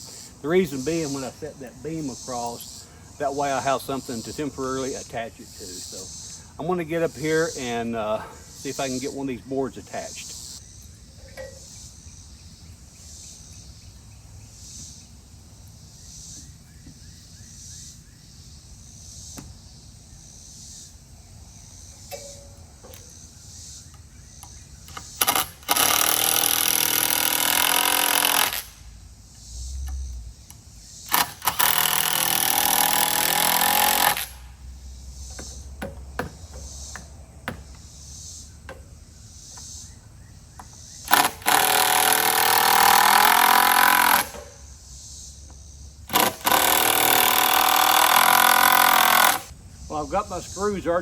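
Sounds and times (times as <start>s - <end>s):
power driver driving screws: 24.8s - 28.8s, 31.1s - 34.5s, 41.1s - 44.6s, 46.1s - 49.5s.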